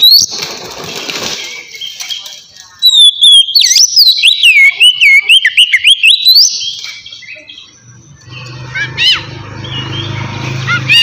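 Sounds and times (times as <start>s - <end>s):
magpie-robin whistled song: 2.8s - 11.0s.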